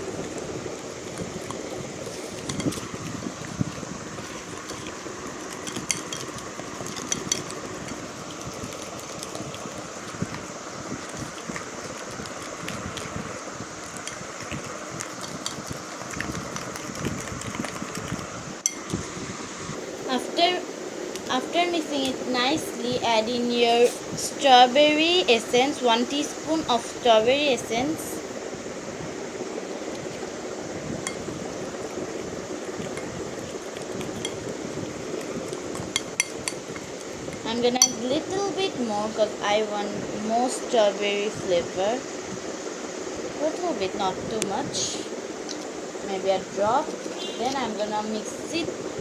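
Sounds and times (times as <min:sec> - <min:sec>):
batter mixing scraping swishing: 0:00.0 - 0:18.5, 0:19.8 - 0:28.3
steady background hum: 0:00.0 - 0:49.0
utensil clicking against bowl: 0:05.5 - 0:09.6, 0:35.8 - 0:38.0
teaspoon clinking against bowl: 0:37.8 - 0:38.0.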